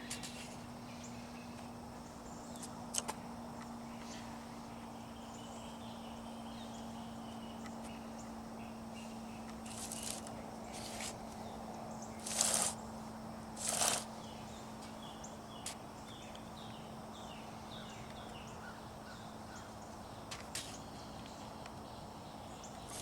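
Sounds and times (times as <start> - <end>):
steady low hum: 0.0 - 23.0
brief rustle: 9.6 - 11.2, 12.2 - 12.8.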